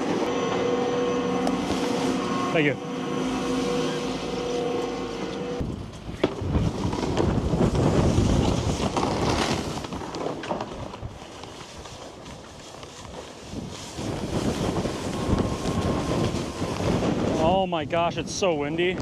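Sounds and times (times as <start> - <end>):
machine hum: 0.0 - 9.0
snowboard scraping on snow: 0.0 - 17.6
wind buffeting microphone: 0.0 - 19.0.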